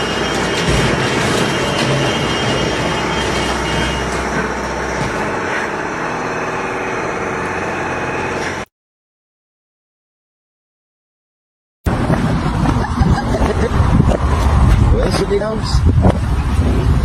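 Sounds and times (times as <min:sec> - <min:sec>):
vehicle engine running: 0:00.0 - 0:08.7, 0:11.9 - 0:17.0.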